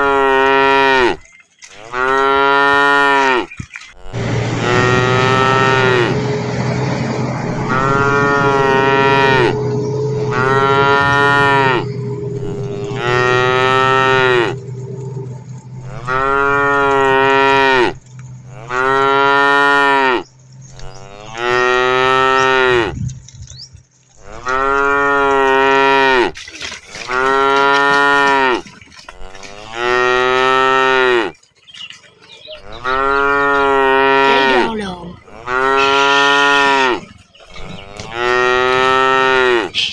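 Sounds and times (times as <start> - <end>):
cattle mooing: 0.0 - 23.0, 24.2 - 26.4, 27.0 - 31.4, 32.5 - 39.9
low steady hum: 4.0 - 23.9.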